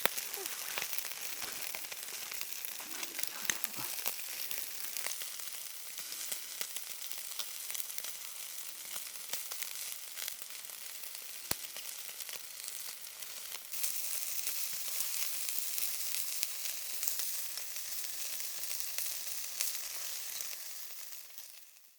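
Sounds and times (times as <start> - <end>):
meat sizzling on a grill pan: 0.0 - 21.9
fat popping and spitting: 0.2 - 4.1.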